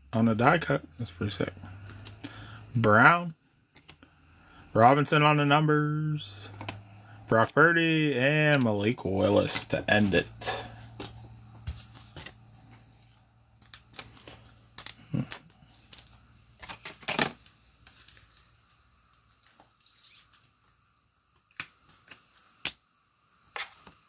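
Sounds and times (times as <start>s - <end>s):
trading cards rustling and tapping: 10.9s - 18.4s.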